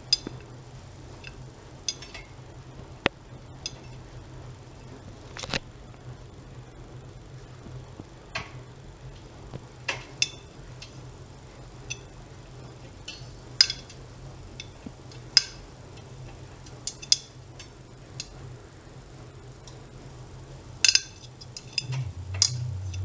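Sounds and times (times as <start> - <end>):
low hum: 21.7 - 23.0.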